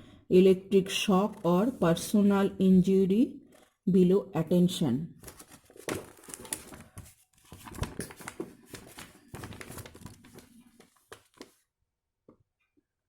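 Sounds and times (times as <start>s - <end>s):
paper rustling and crinkling: 5.2s - 11.6s.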